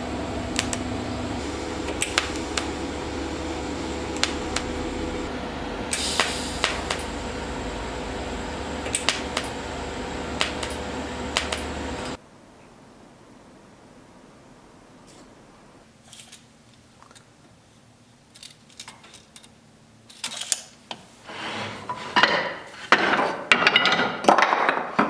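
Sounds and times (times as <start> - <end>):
steady mechanical hum: 0.0 - 12.3.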